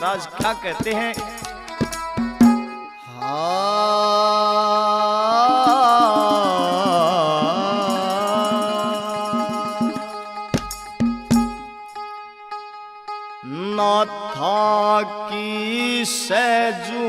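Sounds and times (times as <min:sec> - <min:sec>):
quick drum strokes: 0:00.4 - 0:02.8, 0:05.6 - 0:11.7
sustained accompaniment: 0:05.4 - 0:14.3.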